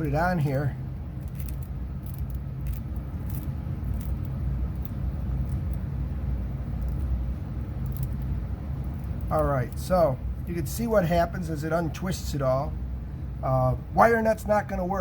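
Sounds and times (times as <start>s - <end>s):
low background hum: 0.0s - 15.0s
wire nut twisting clicks and scrapes: 1.0s - 10.6s.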